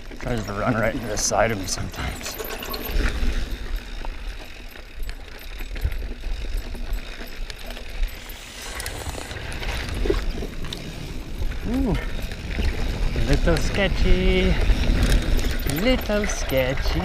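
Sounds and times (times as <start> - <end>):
tyres rolling over dirt trail: 0.0 - 17.0
wind rumble on microphone: 7.9 - 17.0.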